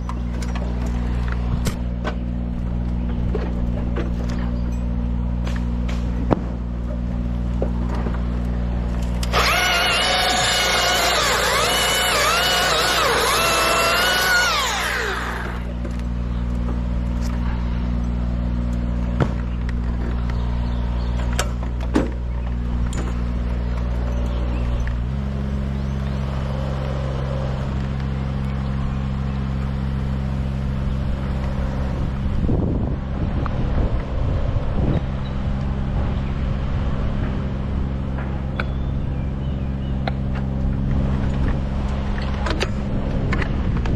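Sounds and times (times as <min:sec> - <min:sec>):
low engine hum: 0:00.0 - 0:43.9
chainsaw cutting: 0:09.2 - 0:15.8.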